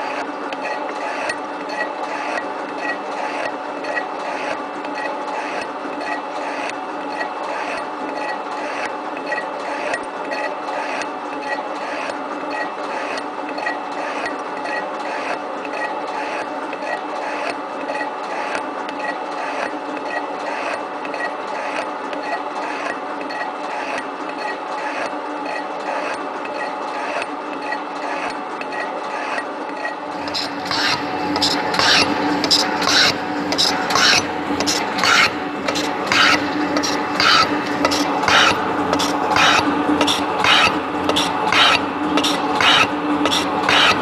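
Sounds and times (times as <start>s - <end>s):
cutter scraping metal: 7.5s - 44.0s
gear drive humming: 30.0s - 44.0s
repeating machine click: 30.1s - 44.0s.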